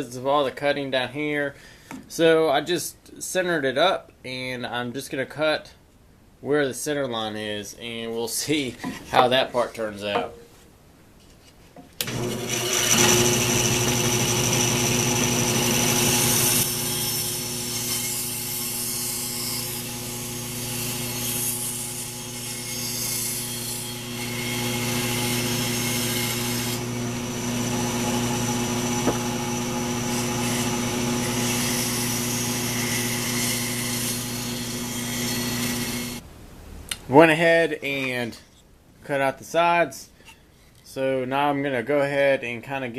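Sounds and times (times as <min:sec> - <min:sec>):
bandsaw motor hum: 0:12.0 - 0:36.2
saw blade rasping wood: 0:12.0 - 0:36.2.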